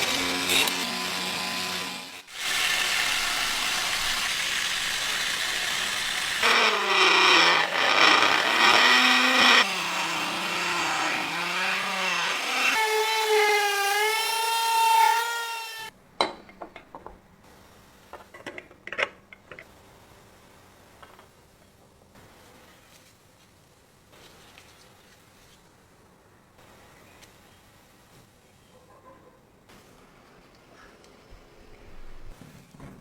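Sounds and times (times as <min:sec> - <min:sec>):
handheld power tool whining: 0:00.0 - 0:15.9.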